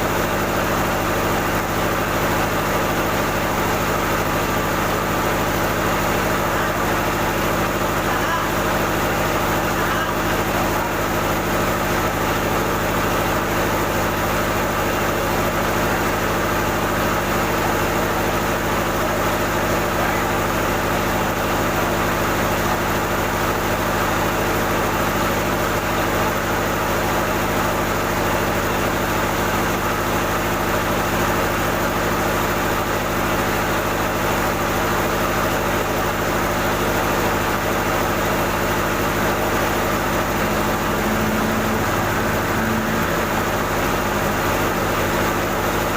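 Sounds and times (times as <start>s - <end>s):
rice milling machinery drone: 0.0s - 45.9s.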